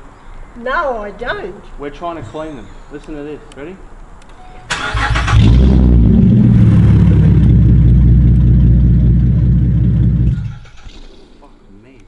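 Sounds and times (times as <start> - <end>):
car engine starting and running: 4.7 - 11.5.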